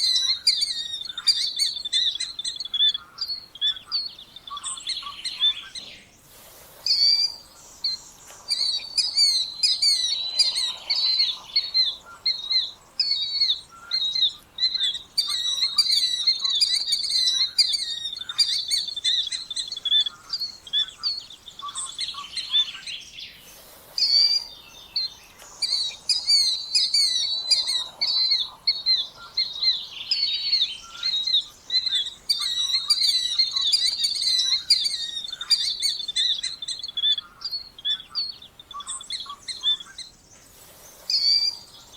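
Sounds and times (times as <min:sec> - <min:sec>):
killdeer calling: 0:06.9 - 0:22.9, 0:24.0 - 0:40.1, 0:41.1 - 0:41.9.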